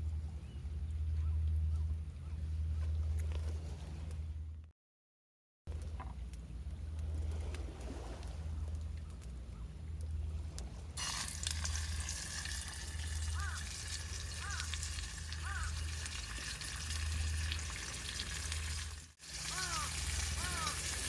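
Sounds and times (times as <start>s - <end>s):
food sizzling on a pan: 11.0s - 12.6s.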